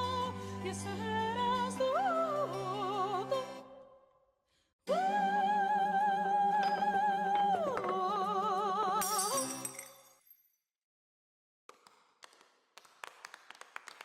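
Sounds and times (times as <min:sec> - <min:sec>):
operatic soprano singing: 0:00.0 - 0:04.0, 0:04.9 - 0:09.6.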